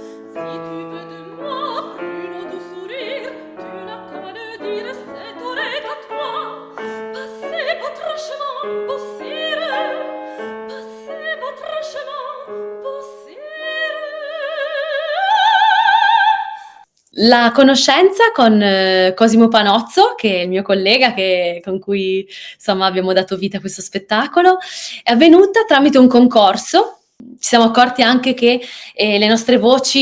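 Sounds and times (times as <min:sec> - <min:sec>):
piano accompaniment: 0:00.0 - 0:13.9
soprano singing operatically: 0:00.0 - 0:16.8.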